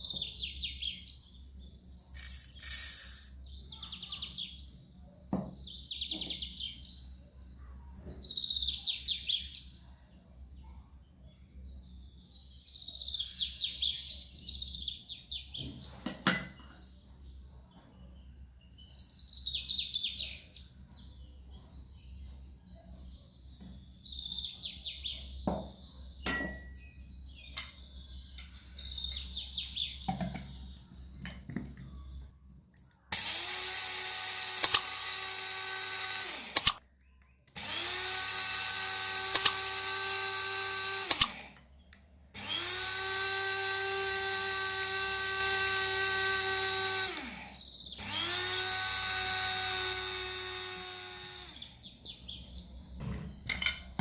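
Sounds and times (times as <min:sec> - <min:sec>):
faint bird chirps: 0:00.0 - 0:16.0
kitchen appliance motor whining: 0:02.2 - 0:03.4, 0:33.1 - 0:36.8, 0:37.6 - 0:41.6, 0:42.4 - 0:51.8
sharp clicks: 0:34.4 - 0:36.8, 0:39.3 - 0:39.7, 0:41.0 - 0:42.0.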